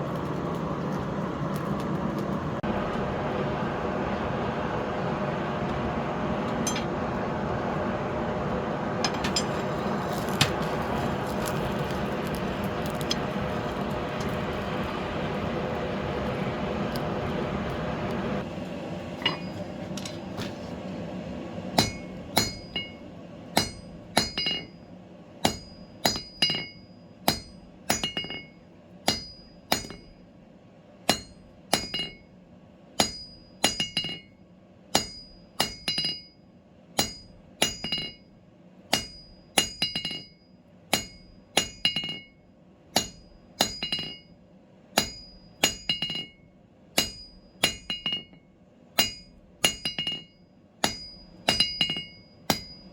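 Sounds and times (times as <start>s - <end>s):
hammer striking steel on anvil: 6.5s - 7.0s, 9.0s - 9.7s, 19.2s - 20.2s, 21.8s - 24.8s, 25.4s - 30.2s, 31.1s - 32.3s, 33.0s - 36.4s, 37.0s - 38.3s, 38.9s - 44.4s, 45.0s - 52.9s.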